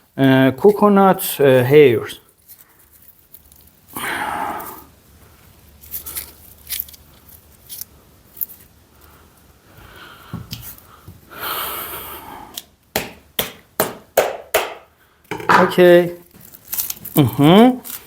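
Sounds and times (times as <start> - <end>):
coconut husk fibres ripping: 2.2 - 5.0, 5.6 - 8.8, 15.8 - 18.0
sharp knocks: 13.0 - 15.8.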